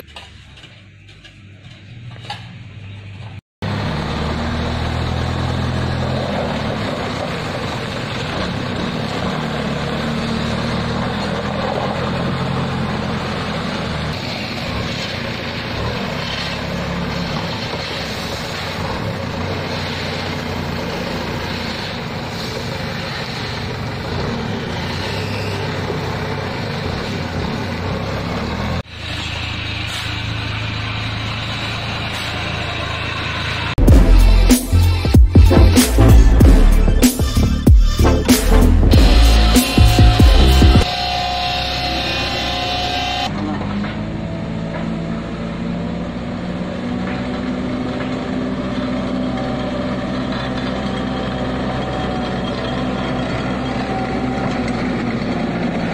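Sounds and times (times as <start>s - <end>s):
heavy machine engine running: 0.0s - 55.9s.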